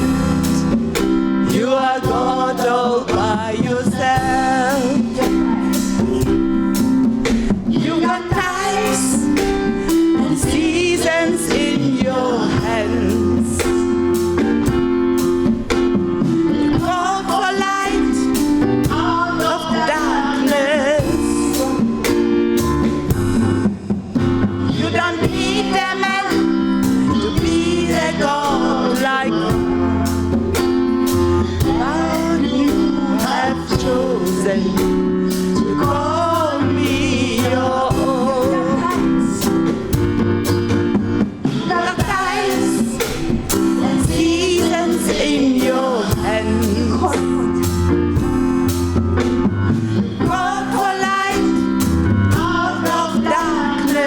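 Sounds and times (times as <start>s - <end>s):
band playing chords: 0.0s - 54.0s
drums: 0.0s - 54.0s
gospel singing: 0.0s - 54.0s.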